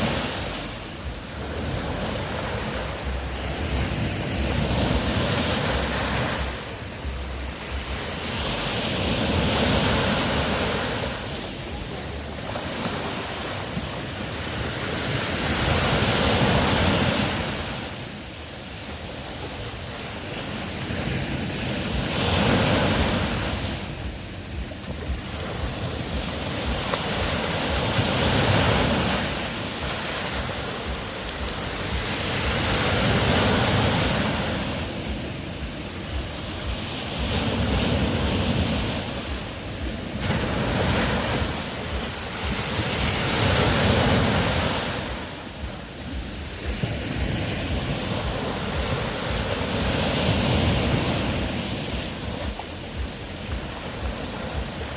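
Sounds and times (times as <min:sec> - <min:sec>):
ocean waves breaking: 0:00.0 - 0:54.9.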